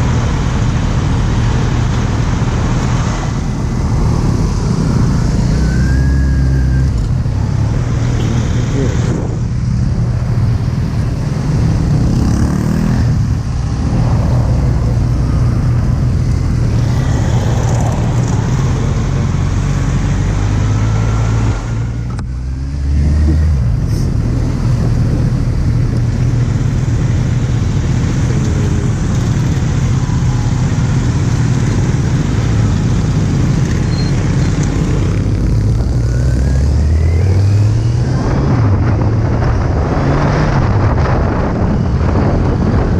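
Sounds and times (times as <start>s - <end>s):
loud wind noise: 0.0s - 42.9s.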